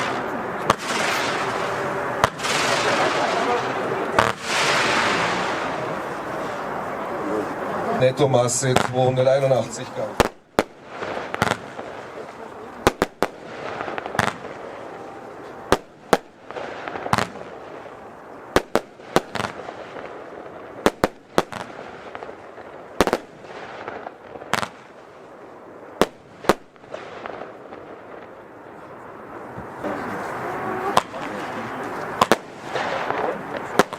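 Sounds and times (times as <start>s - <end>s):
firework hissing and crackling: 0.0s - 8.0s, 29.7s - 33.9s
firework bangs: 0.0s - 33.9s.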